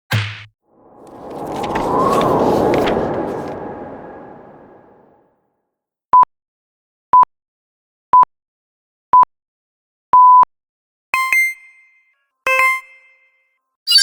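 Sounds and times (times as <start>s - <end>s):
electronic countdown beeps: 11.2s - 11.8s, 12.5s - 13.2s.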